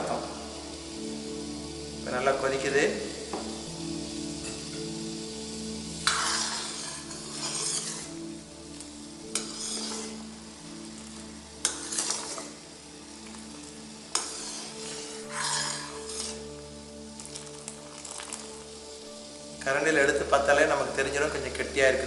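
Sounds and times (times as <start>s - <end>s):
ladle scraping and stirring: 6.0s - 10.3s, 11.0s - 12.6s, 13.2s - 16.6s.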